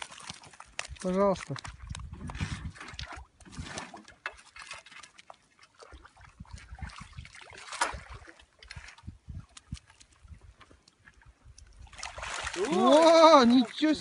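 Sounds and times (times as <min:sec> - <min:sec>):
shallow water sloshing: 0:00.0 - 0:14.0
water splashes: 0:00.0 - 0:14.0.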